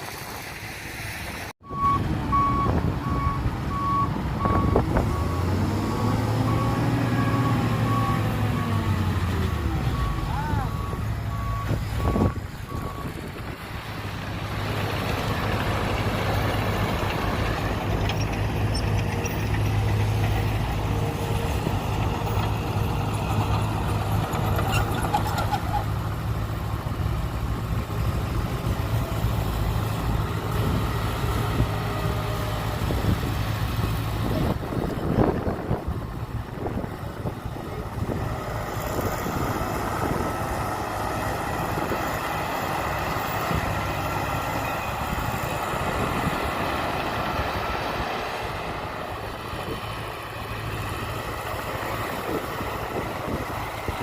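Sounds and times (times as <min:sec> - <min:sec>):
diesel earthmoving machinery running: 0:00.0 - 0:54.0
reversing beeper: 0:01.6 - 0:13.2.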